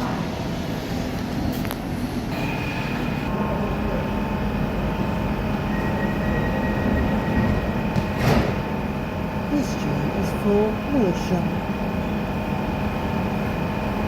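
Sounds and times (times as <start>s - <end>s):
train rumbling: 0.0s - 14.0s.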